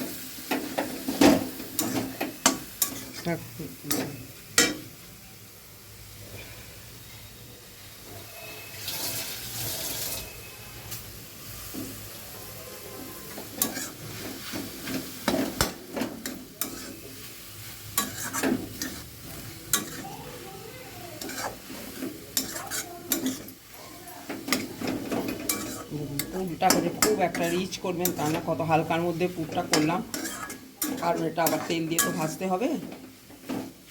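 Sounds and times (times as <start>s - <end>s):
food sizzling: 0.0s - 33.9s
utensil scraping a pan: 13.3s - 17.2s, 18.0s - 20.2s, 21.2s - 23.6s, 24.2s - 32.6s.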